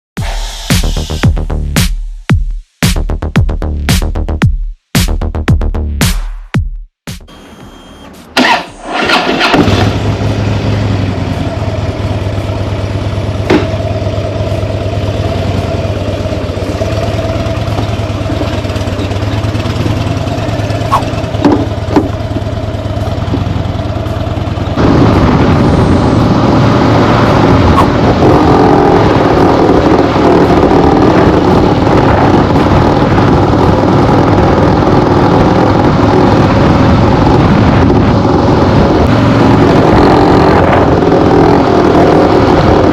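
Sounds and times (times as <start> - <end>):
motorcycle engine running: 8.4 - 42.9
motorcycle rattling: 8.4 - 42.9.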